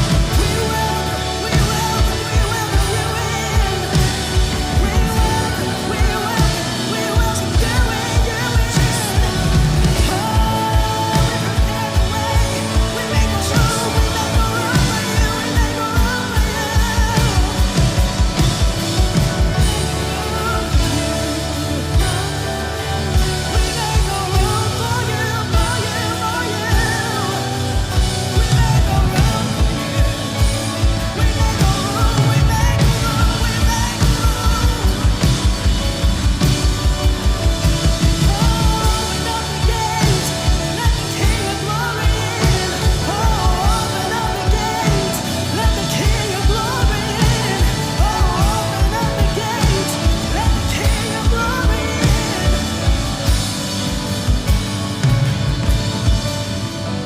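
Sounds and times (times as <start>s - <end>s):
live rock band playing: 0.0s - 57.0s
person singing: 0.0s - 57.0s.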